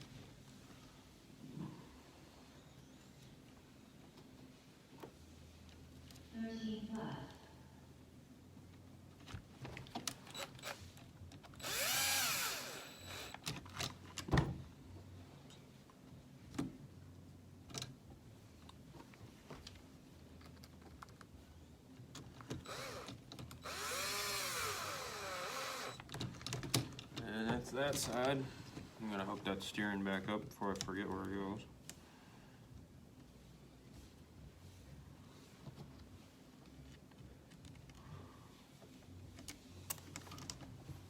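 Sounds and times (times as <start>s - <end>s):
cordless power screwdriver running: 10.4s - 10.8s, 11.6s - 13.4s, 22.6s - 26.0s.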